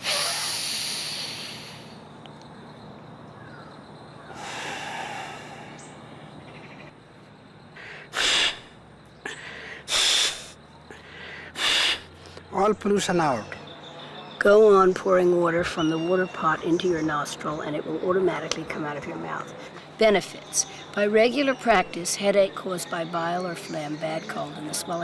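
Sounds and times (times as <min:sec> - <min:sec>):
forceful breaths through the nose: 0:07.8 - 0:08.7, 0:09.3 - 0:12.5.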